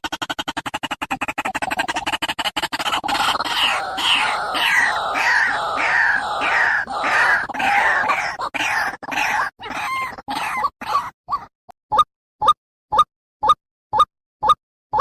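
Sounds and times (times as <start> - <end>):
waterhen calling harsh notes: 2.7 - 11.1.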